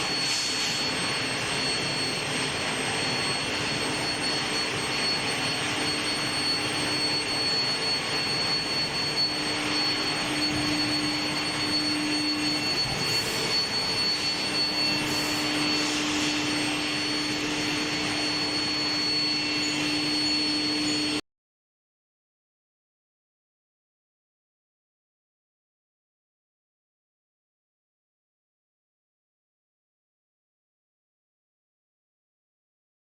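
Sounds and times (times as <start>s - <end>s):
industrial high whine: 0.0s - 21.2s.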